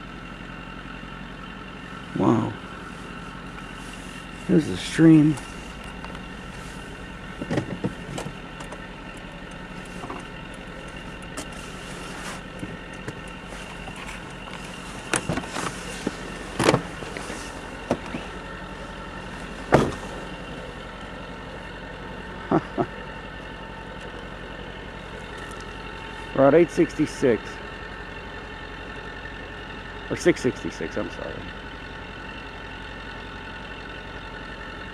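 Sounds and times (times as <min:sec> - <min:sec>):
compressor mechanical drone: 0:00.0 - 0:31.6
sharp knocks and clatters: 0:07.3 - 0:11.6, 0:19.7 - 0:20.2.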